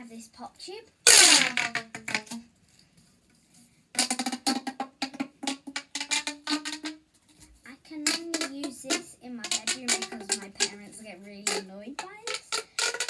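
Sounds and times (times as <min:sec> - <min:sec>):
plastic pop tube popping: 0:01.1 - 0:02.5, 0:04.0 - 0:13.0.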